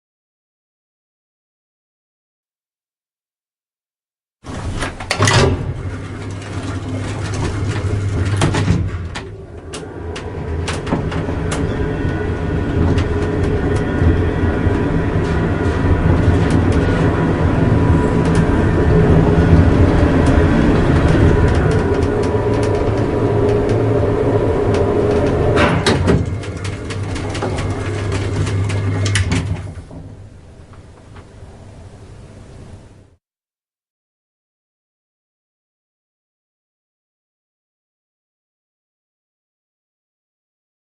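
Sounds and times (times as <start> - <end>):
elevator car rattling: 4.5 - 32.9
elevator drive humming: 4.5 - 33.2.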